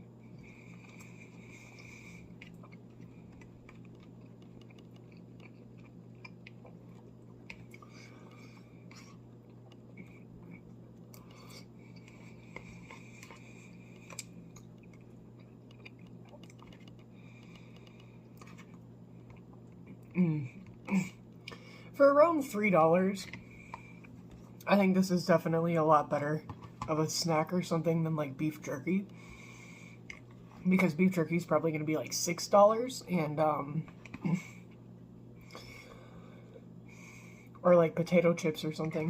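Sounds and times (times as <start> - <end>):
steady low hum: 0.0 - 39.0
chewing: 0.3 - 21.6, 23.2 - 24.6, 29.1 - 30.7.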